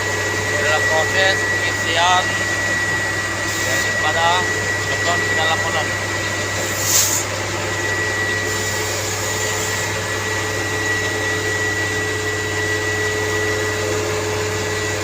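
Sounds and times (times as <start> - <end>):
concrete mixer truck humming: 0.0 - 15.0
short hiss: 6.8 - 7.2.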